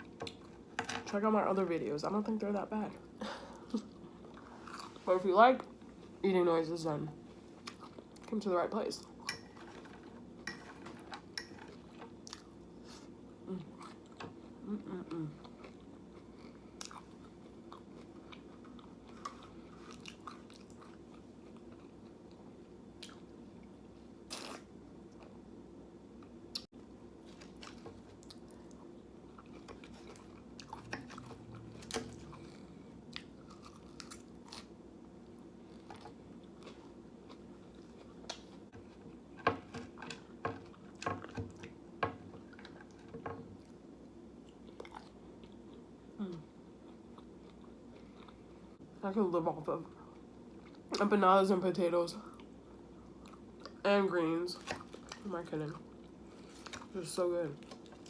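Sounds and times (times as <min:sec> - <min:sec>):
person chewing and biting food: 0:27.3 - 0:34.8.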